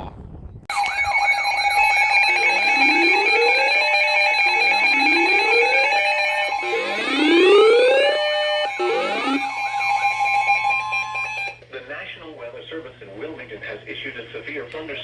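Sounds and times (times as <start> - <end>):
rising alert tone sweep: 0.7 - 11.6
steady alarm tones: 0.7 - 11.6.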